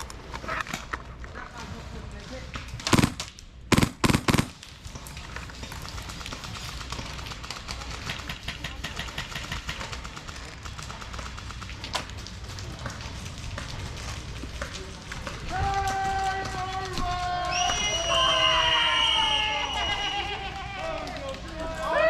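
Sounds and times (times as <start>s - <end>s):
outdoor noise: 0.0s - 22.0s
airsoft gun shot: 2.9s - 4.6s.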